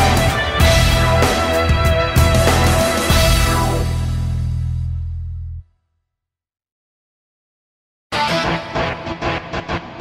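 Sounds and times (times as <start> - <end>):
band with drums and guitar: 0.0 - 4.6.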